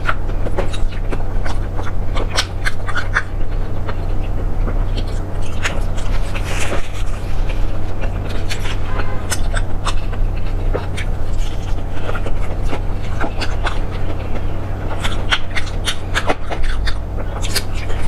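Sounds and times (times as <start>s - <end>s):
low hum: 0.0s - 18.0s
person chewing: 0.0s - 18.0s.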